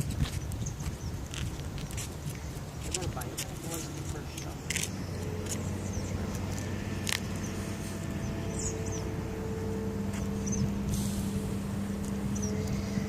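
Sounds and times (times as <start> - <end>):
motor droning: 3.8 - 13.0
high bird chirps: 7.2 - 9.2, 10.2 - 10.8.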